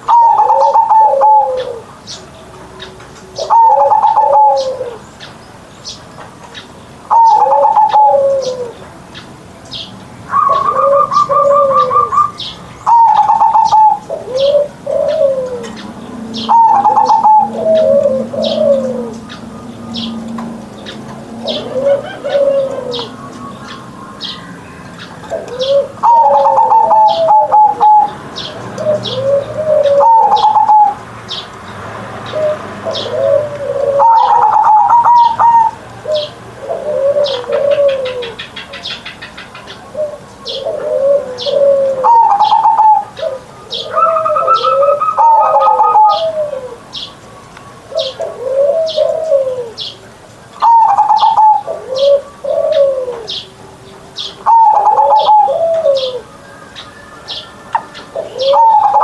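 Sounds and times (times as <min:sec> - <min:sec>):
dove cooing: 0:00.0 - 0:02.1, 0:02.7 - 0:05.1, 0:07.1 - 0:08.8, 0:10.3 - 0:31.1, 0:32.2 - 0:47.1, 0:47.7 - 0:59.0.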